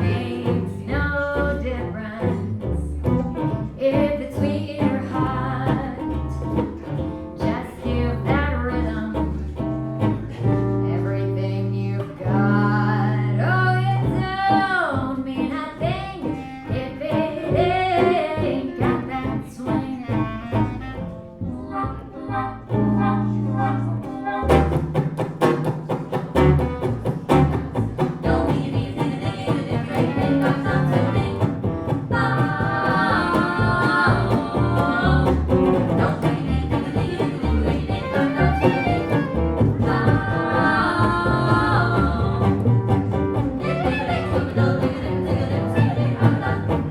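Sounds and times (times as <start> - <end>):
fast strummed rhythm: 0.0 - 21.1, 22.7 - 46.9
bass notes: 0.0 - 46.9
vibrato melody: 37.0 - 42.4, 43.5 - 46.6.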